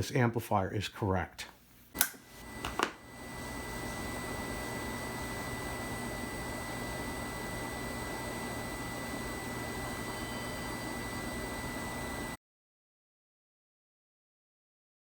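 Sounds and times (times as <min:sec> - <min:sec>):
thin high tone: 0:09.6 - 0:11.8.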